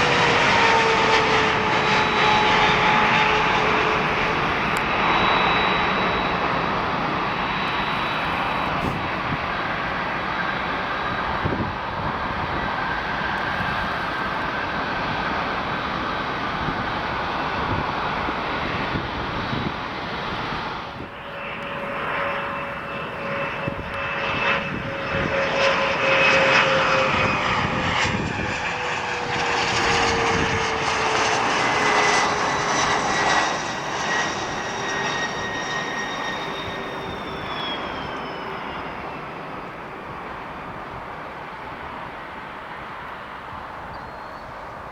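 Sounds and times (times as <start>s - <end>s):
jet engine whining tones: 0.0s - 44.9s
jet engines rushing: 0.0s - 44.9s.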